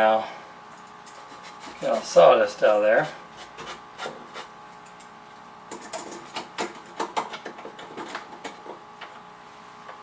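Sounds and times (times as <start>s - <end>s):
knocks and scrapes in wood: 3.4s - 4.5s.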